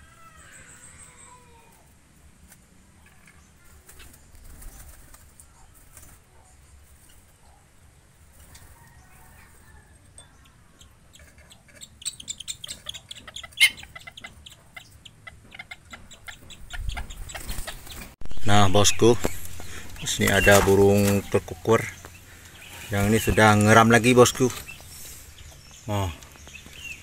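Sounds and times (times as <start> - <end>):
birds flapping wings: 3.6 - 6.3, 16.4 - 18.2
faint bird calls: 8.5 - 27.0.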